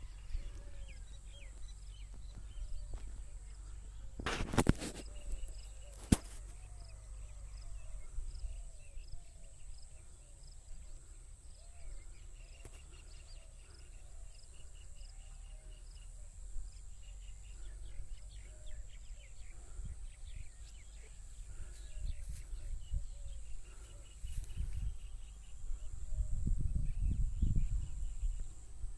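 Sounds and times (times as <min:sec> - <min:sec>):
birds calling and chirping: 0:00.0 - 0:28.9.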